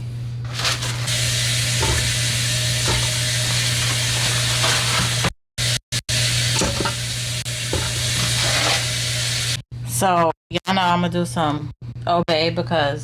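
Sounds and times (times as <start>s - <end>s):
butter sizzling in a pot: 0.6s - 9.6s.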